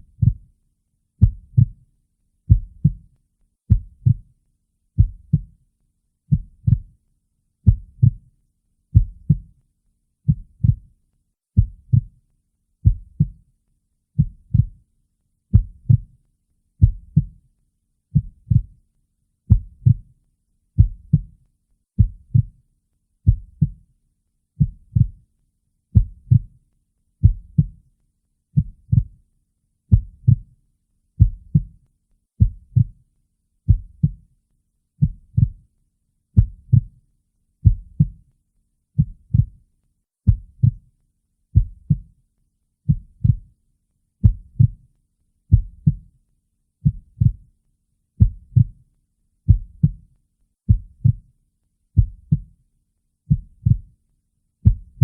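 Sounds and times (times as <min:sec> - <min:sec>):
heartbeat: 0:00.0 - 0:00.5, 0:01.2 - 0:01.8, 0:02.5 - 0:03.1, 0:03.7 - 0:04.3, 0:05.0 - 0:05.5, 0:06.3 - 0:06.9, 0:07.6 - 0:08.2, 0:08.9 - 0:09.5, 0:10.3 - 0:10.9, 0:11.6 - 0:12.2, 0:12.8 - 0:13.4, 0:14.2 - 0:14.8, 0:15.5 - 0:16.1, 0:16.8 - 0:17.4, 0:18.1 - 0:18.8, 0:19.5 - 0:20.1, 0:20.8 - 0:21.3, 0:22.0 - 0:22.6, 0:23.2 - 0:23.8, 0:24.6 - 0:25.2, 0:26.0 - 0:26.5, 0:27.2 - 0:27.8, 0:28.6 - 0:29.2, 0:29.9 - 0:30.5, 0:31.2 - 0:31.7, 0:32.4 - 0:33.0, 0:33.7 - 0:34.2, 0:35.0 - 0:35.7, 0:36.4 - 0:36.9, 0:37.6 - 0:38.2, 0:39.0 - 0:39.6, 0:40.3 - 0:40.8, 0:41.6 - 0:42.1, 0:42.9 - 0:43.5, 0:44.2 - 0:44.8, 0:45.5 - 0:46.0, 0:46.8 - 0:47.4, 0:48.2 - 0:48.8, 0:49.5 - 0:50.0, 0:50.7 - 0:51.2, 0:52.0 - 0:52.5, 0:53.3 - 0:53.9, 0:54.6 - 0:55.0.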